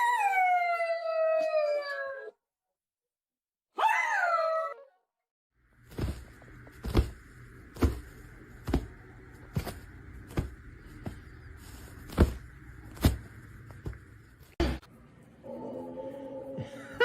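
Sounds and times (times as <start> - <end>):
steady hum: 5.6 - 17.0.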